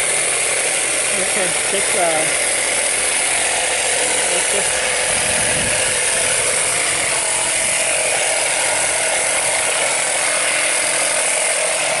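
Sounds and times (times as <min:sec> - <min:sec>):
tyre inflator compressor clattering: 0:00.0 - 0:12.0.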